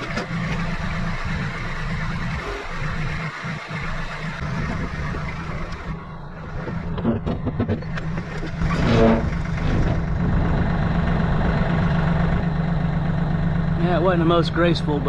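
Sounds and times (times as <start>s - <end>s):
steel scraping groan: 0.0s - 12.5s
machine engine running: 0.0s - 15.0s
metal clanks and knocks: 6.5s - 10.2s.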